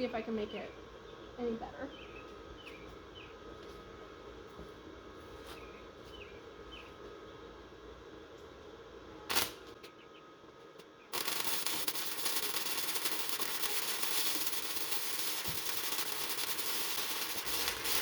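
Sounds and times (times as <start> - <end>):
welding arc crackling: 9.3 - 9.8, 11.1 - 18.0.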